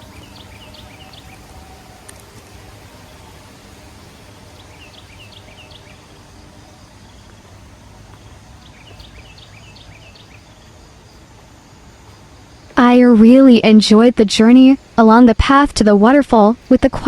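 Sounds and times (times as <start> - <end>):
small bird chirping: 0.0 - 12.9
outdoor ambience hiss: 0.0 - 17.0.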